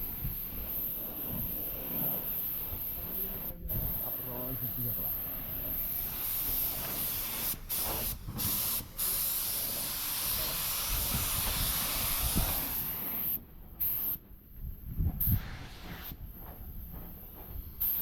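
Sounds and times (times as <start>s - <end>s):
compressed air hissing from nozzle: 0.0s - 18.0s.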